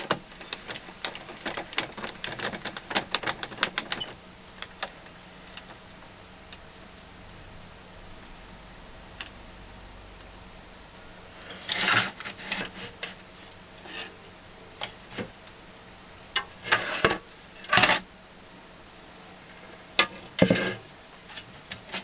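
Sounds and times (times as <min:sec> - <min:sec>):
objects clicking and knocking: 0:00.0 - 0:05.0
rustling: 0:00.0 - 0:06.0.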